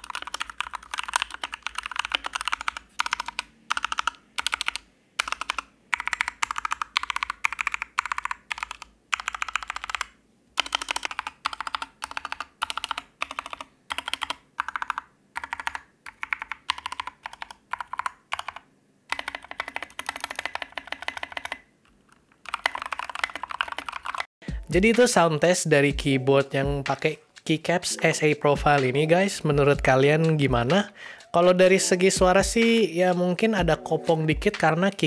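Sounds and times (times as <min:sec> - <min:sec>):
mechanical keyboard typing: 0:00.0 - 0:24.3.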